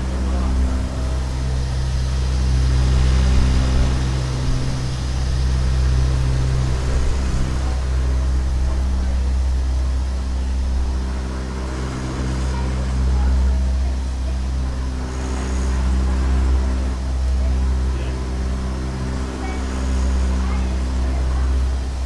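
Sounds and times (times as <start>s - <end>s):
boat engine droning: 0.0s - 22.0s.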